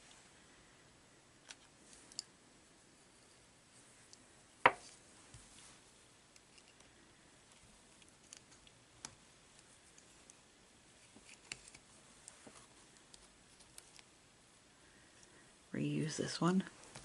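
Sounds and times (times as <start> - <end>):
low room noise: 0.0 - 17.0.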